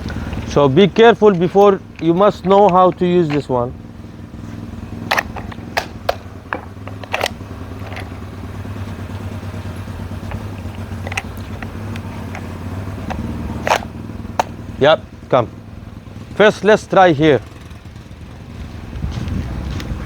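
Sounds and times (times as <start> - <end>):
light sharp clicks and knocks: 0.0 - 3.6
engine idling: 0.0 - 20.0.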